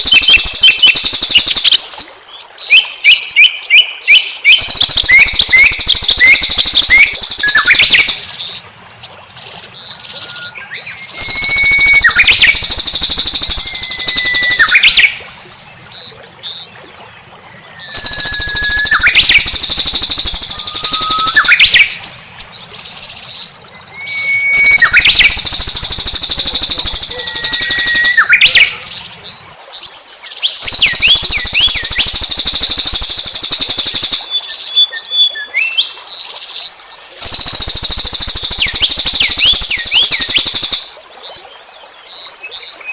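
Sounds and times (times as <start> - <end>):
songbird buzzy song: 0.0 - 42.9
upward sliding whistled notes: 19.8 - 21.6, 24.0 - 25.8.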